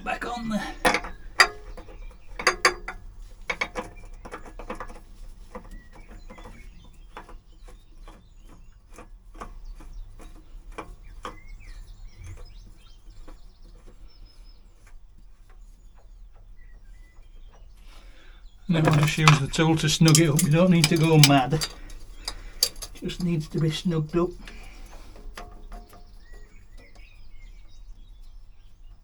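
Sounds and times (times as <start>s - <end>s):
birds chirping faintly: 0.0s - 29.0s
oil filter clicks and knocks: 0.8s - 11.5s, 18.7s - 27.2s.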